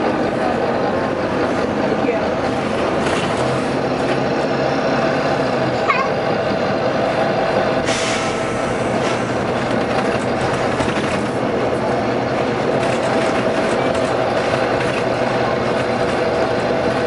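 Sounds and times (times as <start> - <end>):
bus engine hum and rattle: 0.0 - 17.0
compressed air hiss: 7.8 - 9.4.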